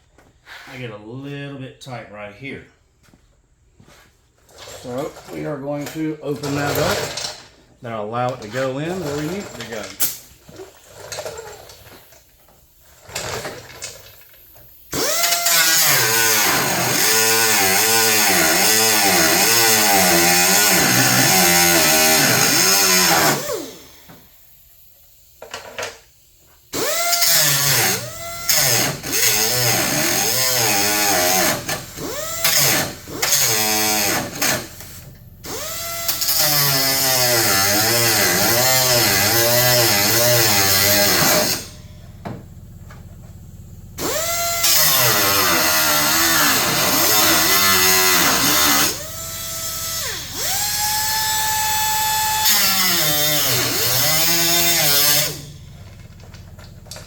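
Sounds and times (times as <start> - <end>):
power cutter cutting sheet metal: 14.9 - 24.1, 26.8 - 41.9, 44.0 - 57.0.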